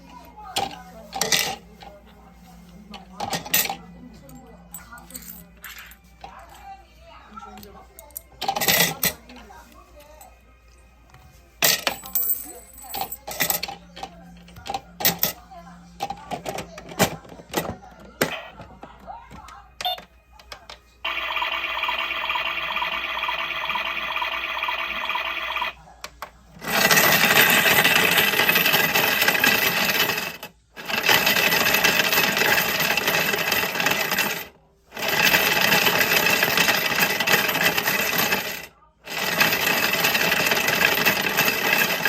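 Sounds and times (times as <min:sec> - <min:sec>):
coins rattling in spinning drum: 0:00.6 - 0:01.6, 0:11.6 - 0:13.8, 0:21.1 - 0:25.8, 0:26.6 - 0:42.0.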